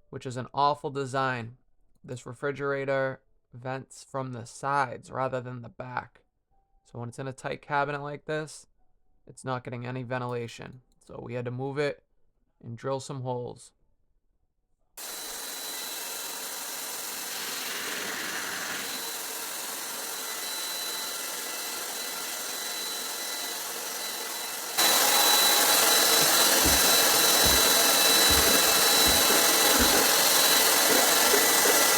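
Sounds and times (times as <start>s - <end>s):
air blower whining: 15.0s - 31.9s
low knocks: 25.7s - 31.3s.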